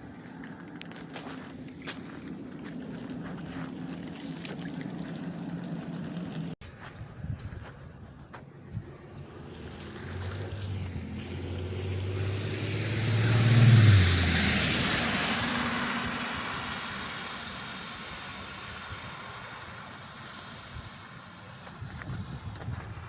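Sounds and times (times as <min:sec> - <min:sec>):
car engine hum passing: 0:00.0 - 0:06.6, 0:08.6 - 0:22.3
tyres hissing on wet road: 0:09.2 - 0:21.8.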